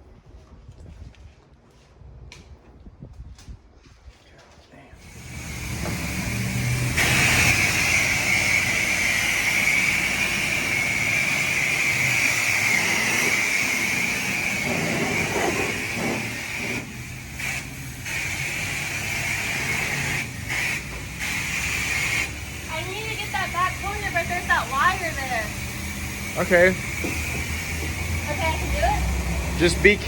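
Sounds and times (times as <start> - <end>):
hissing water spray: 5.0 - 30.0
pressure washer motor humming: 5.0 - 30.0.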